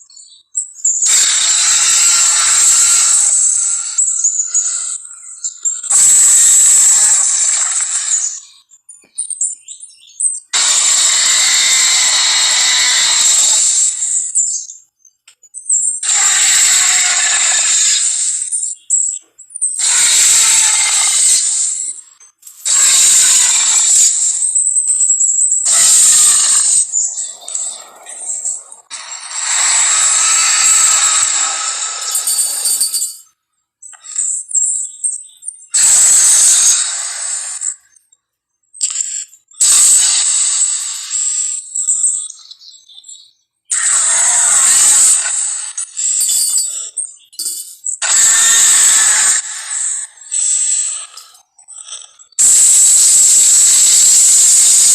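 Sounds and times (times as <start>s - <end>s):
monster roars: 1.1s - 4.0s, 10.6s - 14.2s, 16.0s - 18.3s, 19.8s - 21.8s, 25.6s - 32.2s, 43.7s - 45.7s, 48.0s - 50.9s.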